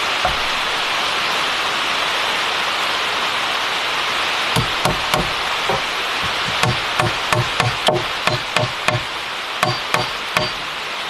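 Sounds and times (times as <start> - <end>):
steady hiss: 0.0 - 11.0
hammer striking nails: 0.2 - 0.9, 4.6 - 10.7.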